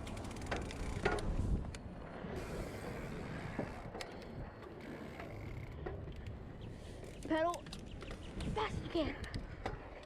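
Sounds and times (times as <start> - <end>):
bike tyre rumble: 0.0 - 10.0.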